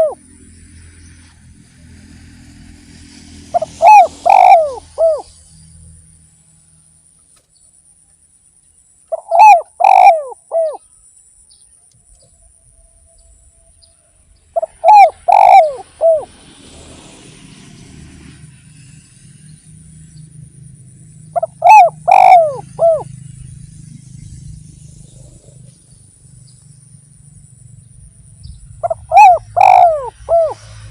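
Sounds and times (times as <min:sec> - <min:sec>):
dove cooing: 0:00.0 - 0:00.2, 0:03.5 - 0:05.3, 0:09.1 - 0:10.8, 0:14.6 - 0:16.4, 0:21.3 - 0:23.2, 0:28.8 - 0:30.7.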